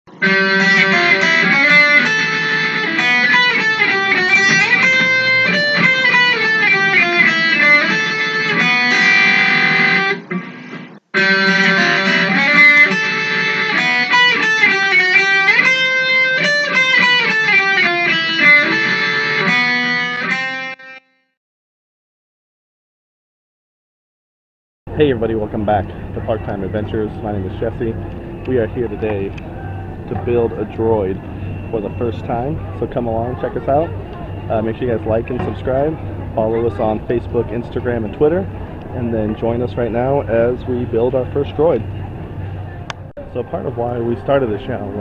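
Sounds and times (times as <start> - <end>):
electric guitar intro music: 0.1 - 21.2.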